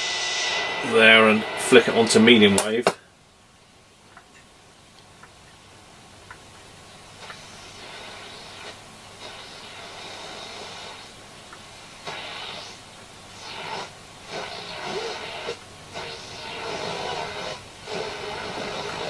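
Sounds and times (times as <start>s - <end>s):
snatches of radio stations: 0.0s - 3.0s, 7.0s - 19.0s
radio static and hiss: 0.0s - 3.1s, 6.8s - 19.0s.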